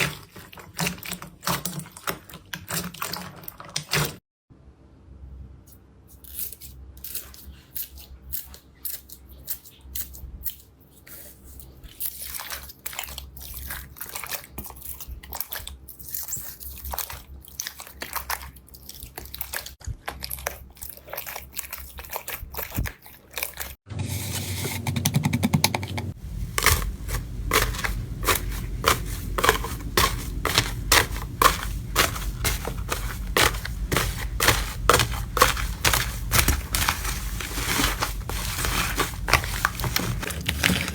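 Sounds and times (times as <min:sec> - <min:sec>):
slime crackling and squishing: 0:11.1 - 0:23.8, 0:26.1 - 0:40.9.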